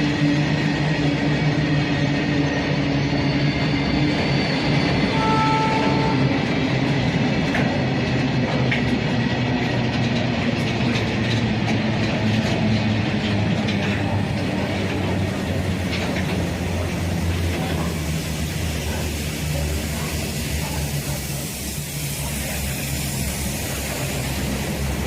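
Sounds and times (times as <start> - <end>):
freight train rumbling past: 0.0 - 25.0
train wheel clicks: 6.4 - 25.0.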